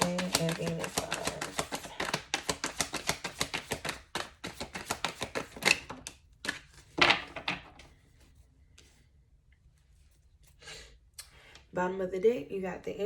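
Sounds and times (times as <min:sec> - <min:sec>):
cards being shuffled: 0:00.0 - 0:07.9.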